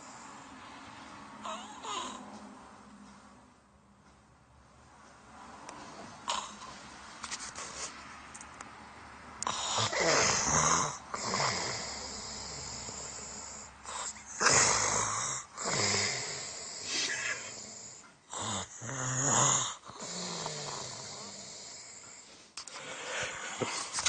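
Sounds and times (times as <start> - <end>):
quiet breathing: 0.0 - 2.5, 9.4 - 18.9, 19.6 - 24.0
man snoring: 1.4 - 2.2, 9.4 - 22.2.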